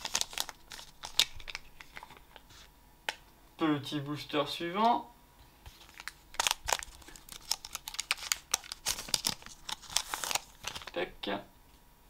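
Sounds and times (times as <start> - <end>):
foil wrapper crinkling: 0.0 - 2.6, 5.7 - 11.0.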